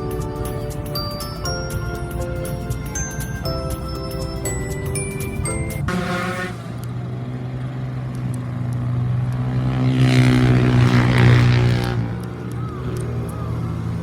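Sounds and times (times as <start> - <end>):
background music: 0.0 - 6.8
vehicle engine humming: 0.0 - 14.0.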